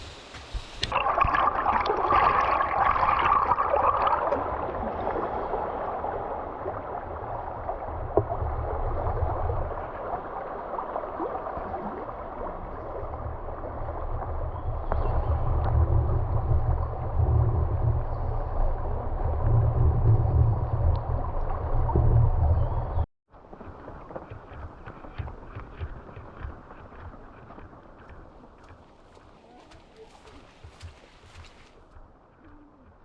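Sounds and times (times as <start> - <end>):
low rumble: 12.6 - 23.1.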